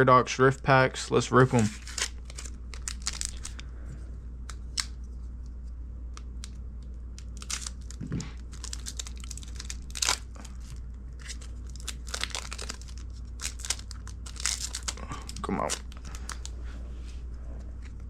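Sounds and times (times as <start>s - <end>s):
foil wrapper tearing and crinkling: 1.5s - 3.6s, 7.2s - 16.5s.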